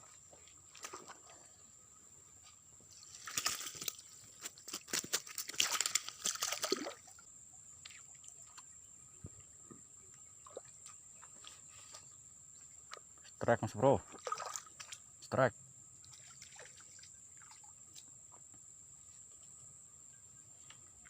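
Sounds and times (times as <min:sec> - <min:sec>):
water splashing and sloshing: 0:00.0 - 0:01.6, 0:02.9 - 0:09.6, 0:10.3 - 0:13.2, 0:14.0 - 0:15.2, 0:16.0 - 0:18.2.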